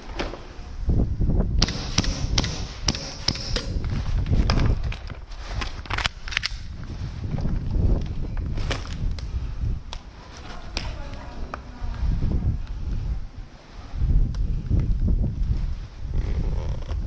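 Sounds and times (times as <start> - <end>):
wind on microphone: 0.0 - 17.0
airsoft guns firing: 1.6 - 3.8
low rumble of movement: 3.6 - 17.0.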